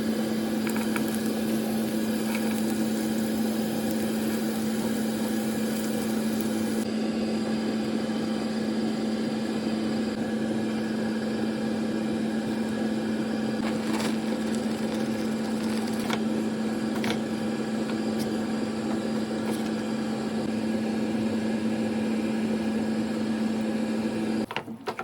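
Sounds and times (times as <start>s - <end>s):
machine hum: 0.0s - 24.5s.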